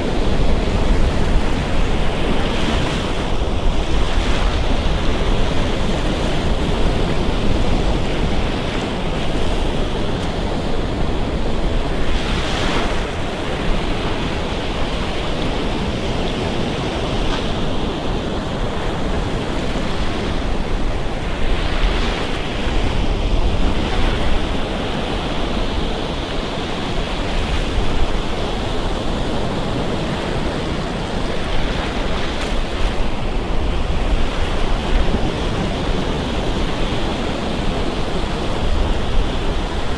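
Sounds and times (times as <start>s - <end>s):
waves breaking on sand: 0.0s - 39.9s
wind rumbling on microphone: 0.0s - 39.9s.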